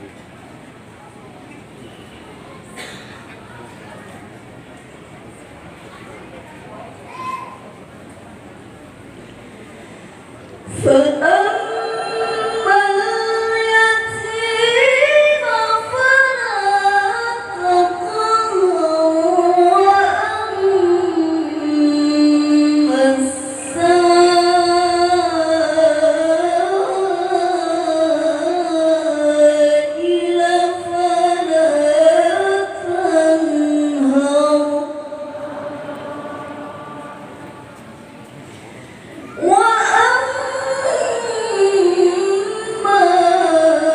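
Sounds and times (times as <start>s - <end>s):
person chanting recitation: 10.7s - 38.1s.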